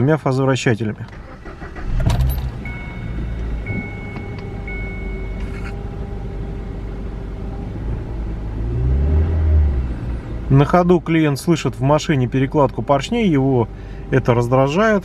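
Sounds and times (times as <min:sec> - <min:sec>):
engine starting click: 0:01.0 - 0:04.5
car engine idling: 0:01.0 - 0:08.9
dashboard warning chime beeps: 0:02.2 - 0:06.3.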